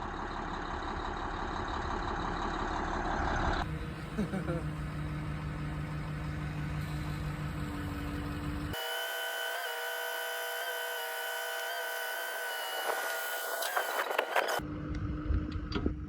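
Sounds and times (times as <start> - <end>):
high mechanical whine: 3.6 - 16.0
motor humming: 3.6 - 16.0.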